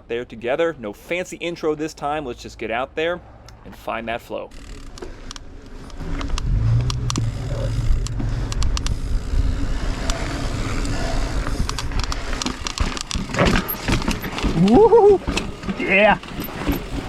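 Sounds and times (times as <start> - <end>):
bike rattling over rocks: 4.5 - 17.0
tyres on rock: 4.5 - 17.0
wind on microphone: 6.4 - 12.5.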